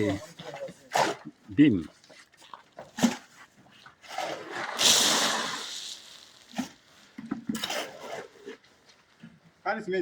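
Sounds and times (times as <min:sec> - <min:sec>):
wet concrete pouring: 0:04.1 - 0:06.9.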